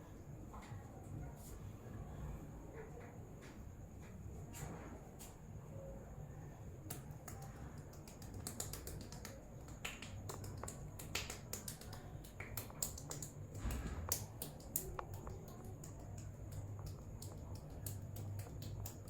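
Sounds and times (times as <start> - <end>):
sharp snaps from head massage: 6.8 - 19.0.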